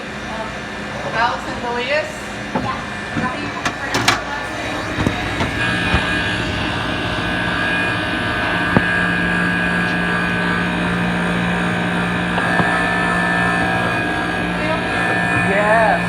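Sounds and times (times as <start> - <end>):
kitchen machinery drone: 0.0 - 16.0.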